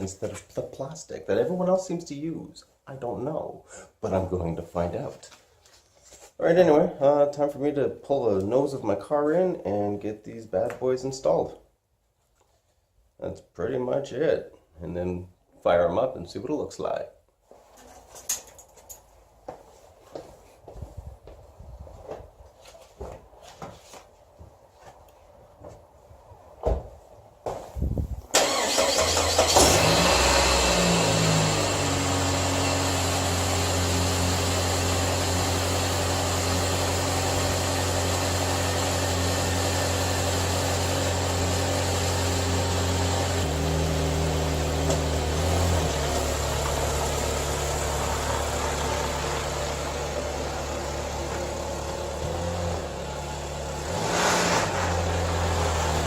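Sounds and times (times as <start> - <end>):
car engine cranking and starting: 28.3 - 56.0
car engine idling: 28.4 - 56.0.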